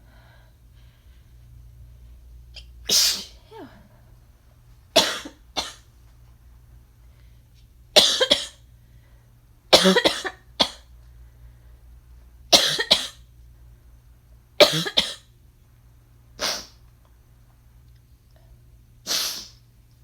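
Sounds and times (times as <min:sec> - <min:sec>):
person coughing: 0:05.0 - 0:05.8, 0:08.0 - 0:08.6, 0:09.7 - 0:10.8, 0:12.6 - 0:13.2, 0:14.6 - 0:15.3.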